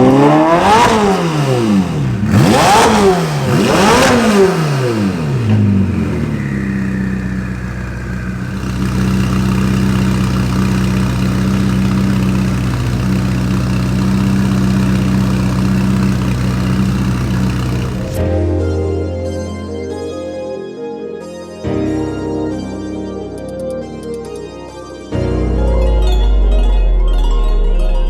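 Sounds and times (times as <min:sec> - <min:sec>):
car engine revving: 0:00.0 - 0:18.2
car engine idling: 0:00.1 - 0:18.2.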